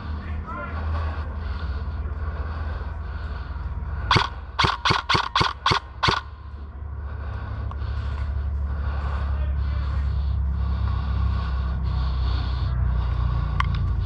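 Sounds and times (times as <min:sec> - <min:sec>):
airsoft gun shots: 0:04.1 - 0:06.3.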